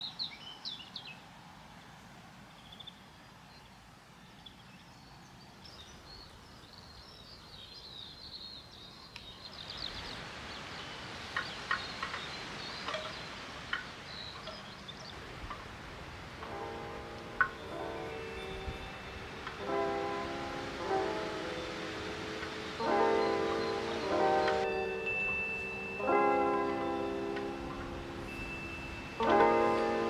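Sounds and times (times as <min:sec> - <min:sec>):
steady background hiss: 0:00.1 - 0:30.0
small birds singing and chirping: 0:16.4 - 0:30.0.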